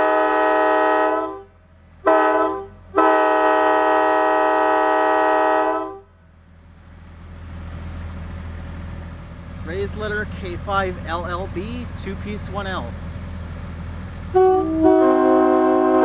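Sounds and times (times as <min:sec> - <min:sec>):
locomotive air horn chord: 0:00.0 - 0:06.2, 0:14.3 - 0:16.0
low engine rumble: 0:00.0 - 0:16.0.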